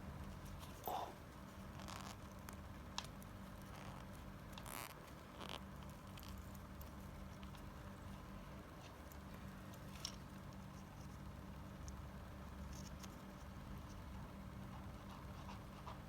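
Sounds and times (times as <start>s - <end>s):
low steady hum: 0.0s - 16.0s
light clicks of toy handling: 8.8s - 11.2s.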